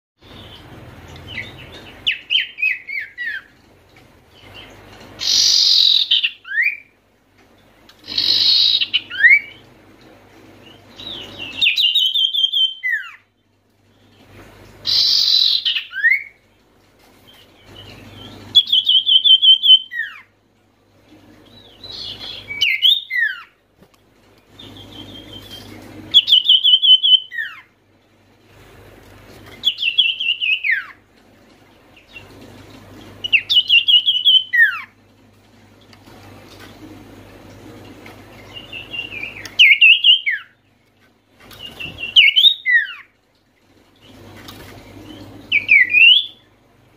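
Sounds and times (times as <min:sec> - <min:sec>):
bird singing: 0:00.2 - 0:03.6, 0:04.3 - 0:07.0, 0:08.0 - 0:09.7, 0:10.6 - 0:14.2, 0:14.8 - 0:16.5, 0:17.3 - 0:20.3, 0:21.5 - 0:23.6, 0:24.5 - 0:27.7, 0:29.6 - 0:31.0, 0:33.0 - 0:35.0, 0:38.4 - 0:40.8, 0:41.5 - 0:43.2, 0:45.0 - 0:46.6.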